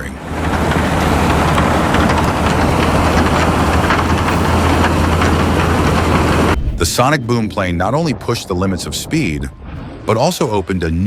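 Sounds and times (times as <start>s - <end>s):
snow blower rushing: 0.0s - 6.7s
train engine hum: 0.0s - 9.5s.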